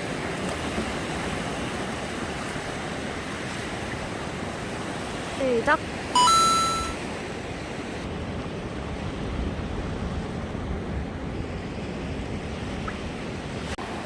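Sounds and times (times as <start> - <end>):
sea surf washing on shore: 0.0 - 14.0
wind rumbling on microphone: 7.1 - 14.0.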